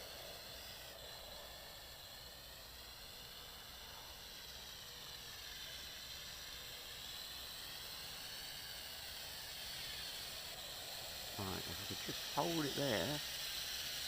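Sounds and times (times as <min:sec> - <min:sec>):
toy drone motors whining: 0:00.0 - 0:14.0.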